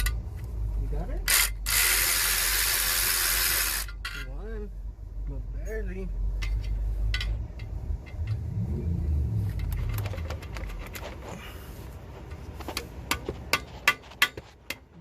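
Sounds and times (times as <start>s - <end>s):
low engine-like rumble: 0.0s - 13.9s
sharp metal taps: 6.4s - 8.4s, 12.6s - 14.9s.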